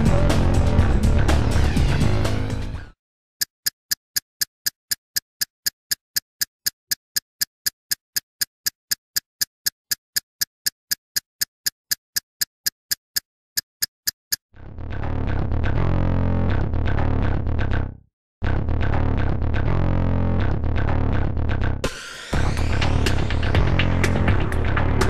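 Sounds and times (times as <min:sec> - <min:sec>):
sharp even ticking: 0:03.4 - 0:14.4.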